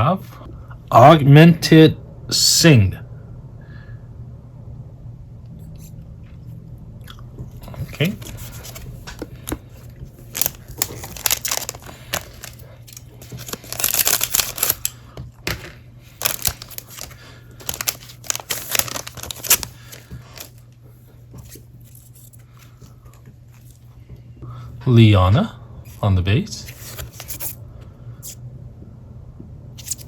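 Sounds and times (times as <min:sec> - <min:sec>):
wrapper tearing and crinkling: 0:10.2 - 0:15.0, 0:16.2 - 0:20.6, 0:29.8 - 0:30.0.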